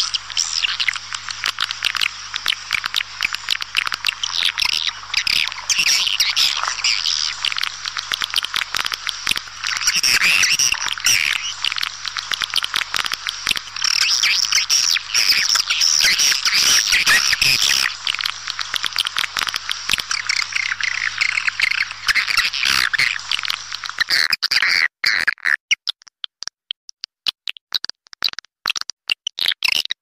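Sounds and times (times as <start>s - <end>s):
swiftlets twittering chorus: 1.9s - 7.7s.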